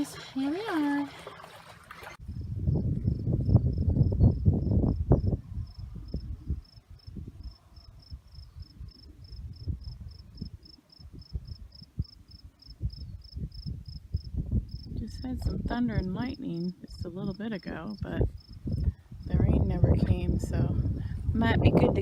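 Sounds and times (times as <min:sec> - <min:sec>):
cricket chirping: 0:02.3 - 0:14.9.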